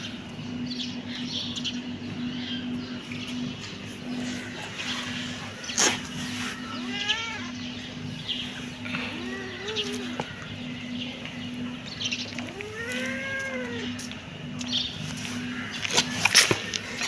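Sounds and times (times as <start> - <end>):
kitten meowing: 6.6 - 7.6, 8.9 - 10.3, 12.4 - 14.0.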